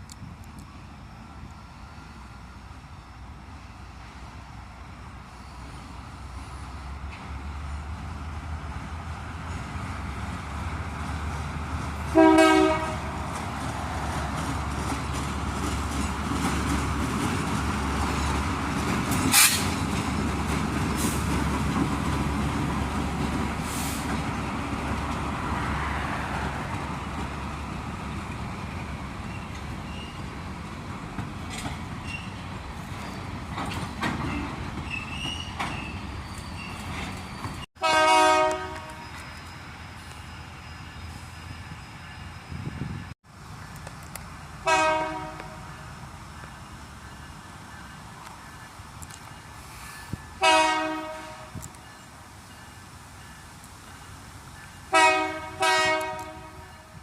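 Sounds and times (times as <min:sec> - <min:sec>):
diesel locomotive engine rumble: 0:00.0 - 0:57.0
locomotive horn blast: 0:12.1 - 0:13.2, 0:37.8 - 0:39.2, 0:44.6 - 0:45.7, 0:50.4 - 0:51.6, 0:54.9 - 0:57.0.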